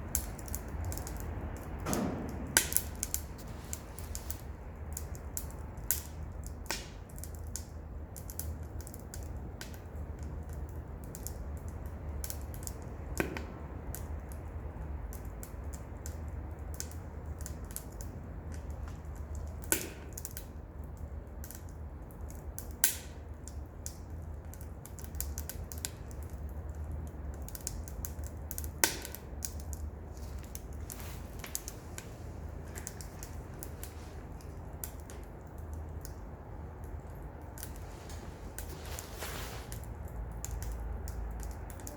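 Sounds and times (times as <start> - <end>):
wood crackling and popping: 0.0 - 41.9.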